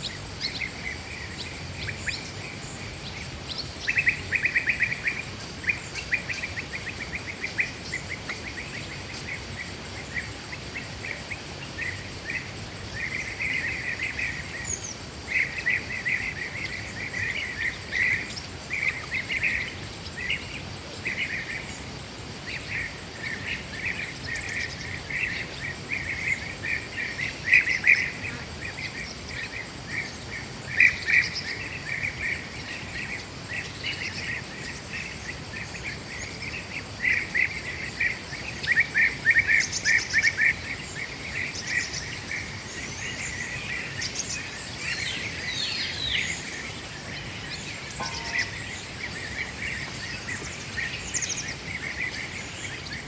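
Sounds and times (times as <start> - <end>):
high insect drone: 0.0 - 53.0
rapid shrill chirping calls: 36.2 - 53.0.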